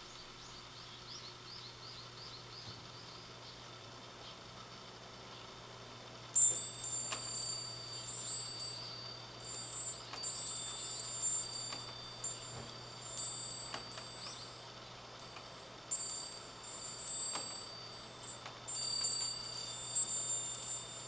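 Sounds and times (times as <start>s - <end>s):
wind chime tinkling: 6.4s - 21.0s.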